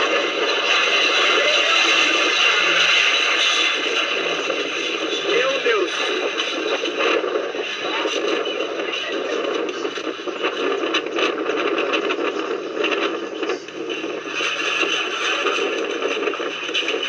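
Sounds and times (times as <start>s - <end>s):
storm wind rushing: 0.0s - 17.0s
tents rattling and clattering: 0.0s - 17.0s.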